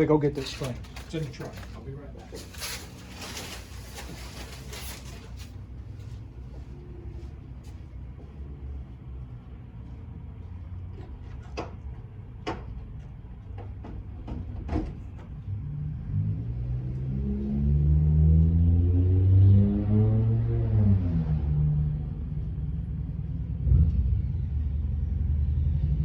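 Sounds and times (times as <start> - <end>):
vehicle engine rising in pitch: 15.8 - 22.4.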